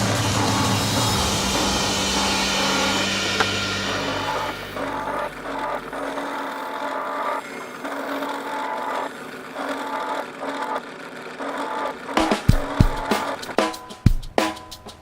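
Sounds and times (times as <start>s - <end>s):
music drum beat: 0.0s - 6.2s, 12.2s - 15.0s
power tool running: 0.0s - 13.6s.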